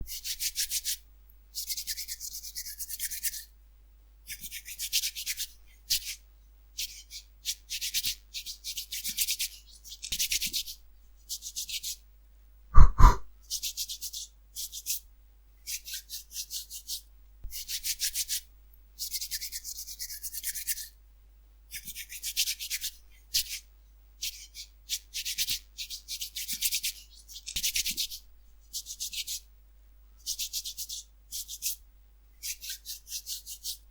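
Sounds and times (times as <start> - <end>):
rough scrubbing strokes: 12.8 - 13.2.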